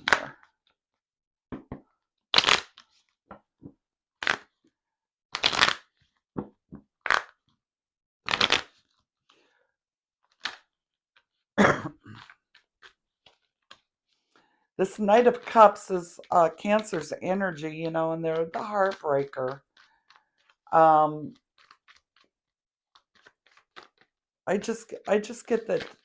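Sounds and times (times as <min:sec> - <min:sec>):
cards shuffling: 0:04.2 - 0:04.5, 0:05.4 - 0:06.0, 0:07.1 - 0:07.4, 0:08.3 - 0:09.0, 0:10.3 - 0:10.6, 0:12.2 - 0:17.1, 0:18.3 - 0:20.6, 0:21.3 - 0:22.3, 0:22.9 - 0:26.0.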